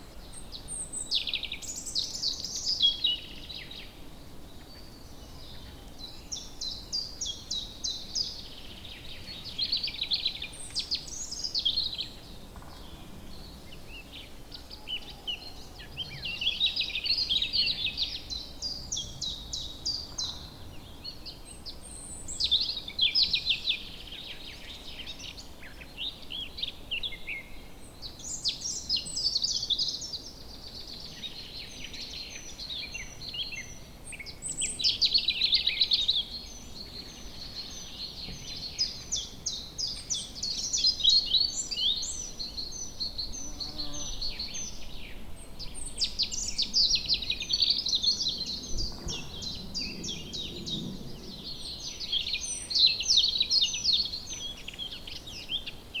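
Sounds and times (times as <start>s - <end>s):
birds chirping and trilling: 34.6s - 55.8s.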